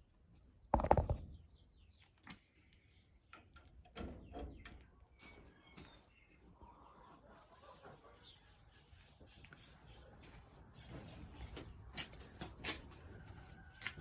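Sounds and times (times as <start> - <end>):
small knocks and rustling: 10.2 - 14.0.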